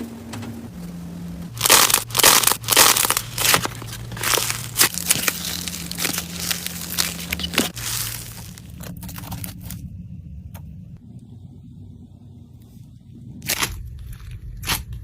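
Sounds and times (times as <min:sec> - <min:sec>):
low steady hum: 0:00.0 - 0:15.0
crunchy slime crackling: 0:01.5 - 0:09.8, 0:13.4 - 0:15.0.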